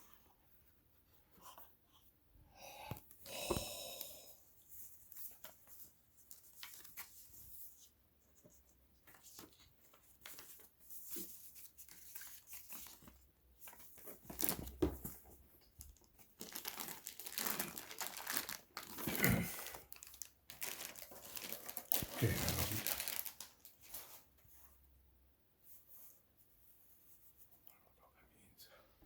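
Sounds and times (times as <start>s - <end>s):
packaging crinkling: 13.7s - 15.0s, 15.8s - 24.1s.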